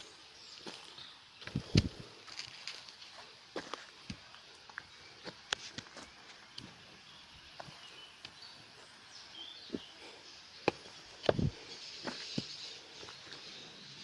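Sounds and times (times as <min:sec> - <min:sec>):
high insect hum: 0:00.0 - 0:14.0
bird chirps: 0:07.0 - 0:14.0.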